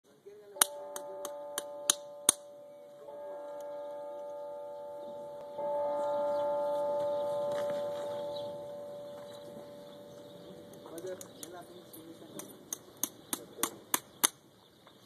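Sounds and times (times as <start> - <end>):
metal ringing like a bell: 0.6 - 12.6.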